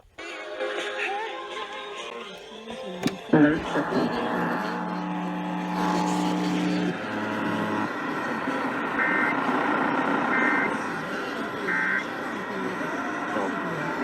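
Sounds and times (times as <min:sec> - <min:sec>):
noisy background: 0:01.5 - 0:14.0
steady held tones: 0:03.3 - 0:14.0
two-tone data bursts: 0:03.6 - 0:14.0.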